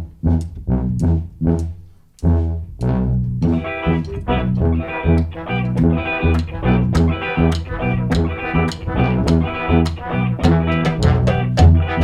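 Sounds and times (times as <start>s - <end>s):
pulsing bass line: 0.0s - 12.0s
sustained melody notes: 0.4s - 12.0s
drum beat: 5.1s - 12.0s.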